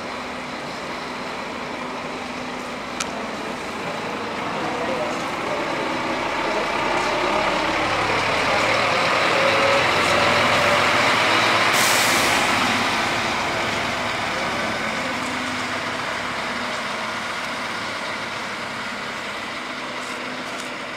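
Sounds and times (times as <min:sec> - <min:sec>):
bus engine running: 0:00.0 - 0:20.9
compressed air hiss: 0:11.7 - 0:12.6.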